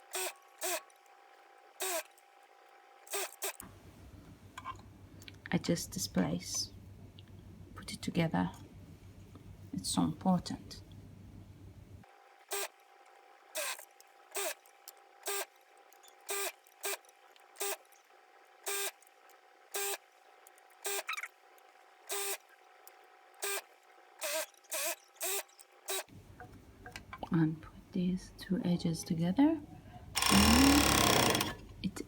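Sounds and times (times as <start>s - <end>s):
overlock sewing machine bursts: 30.2s - 31.6s.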